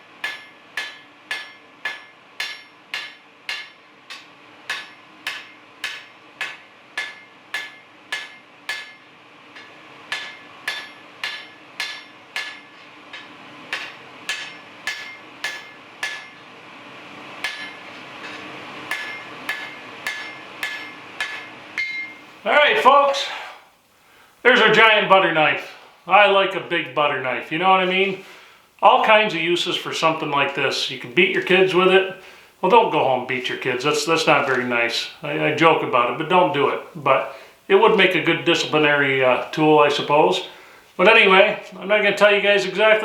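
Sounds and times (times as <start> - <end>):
hammer striking steel on anvil: 0.1 - 16.5, 17.4 - 22.3.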